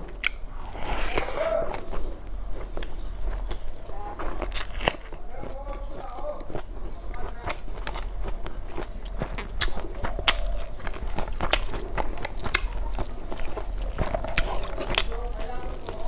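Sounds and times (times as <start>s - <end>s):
person chewing with mouth clicks: 0.0s - 16.0s
sharp bites: 0.0s - 16.0s.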